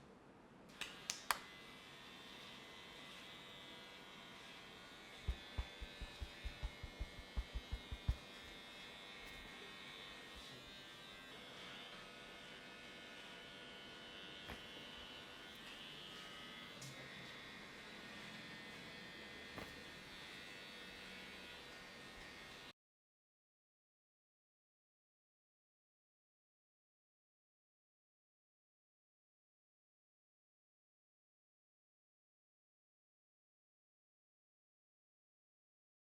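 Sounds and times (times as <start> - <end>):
small electric motor buzzing: 0.8 - 22.7
low thumps: 5.3 - 8.2.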